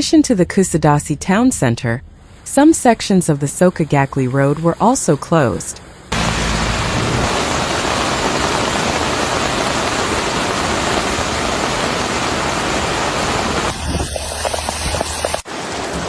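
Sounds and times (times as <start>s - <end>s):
low hum: 6.1s - 15.4s
floodwater rushing: 6.1s - 16.0s.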